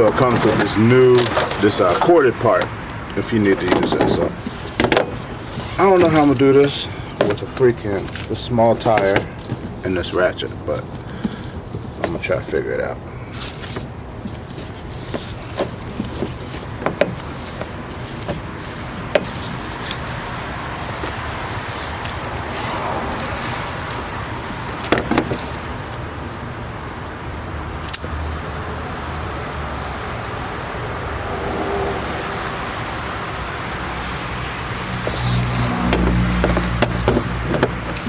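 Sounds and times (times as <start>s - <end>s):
outdoor background noise: 0.0s - 38.0s
low hum: 30.4s - 33.8s.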